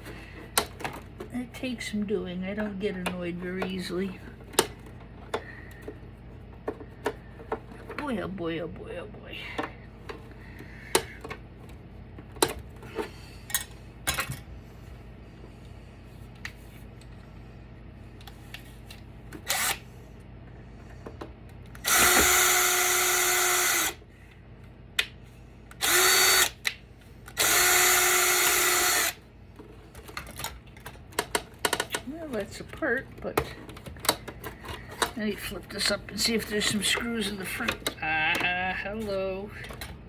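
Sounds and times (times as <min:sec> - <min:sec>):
parts clicking and knocking: 0:00.0 - 0:01.4, 0:20.9 - 0:24.0, 0:24.9 - 0:38.5
power drill running: 0:19.4 - 0:19.8, 0:21.8 - 0:24.0, 0:25.8 - 0:26.6, 0:27.3 - 0:29.2.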